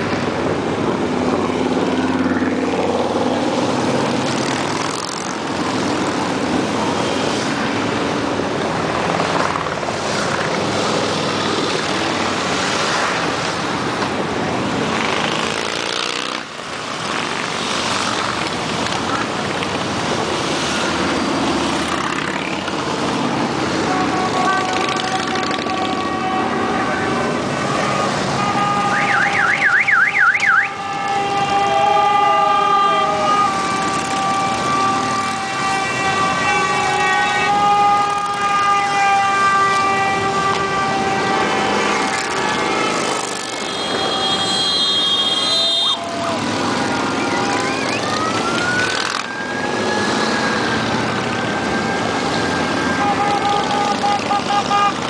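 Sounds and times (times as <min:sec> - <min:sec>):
motorcycle engines running: 0:00.0 - 0:29.1, 0:30.8 - 0:44.6, 0:46.0 - 0:55.0
vehicle sirens: 0:17.5 - 0:55.0.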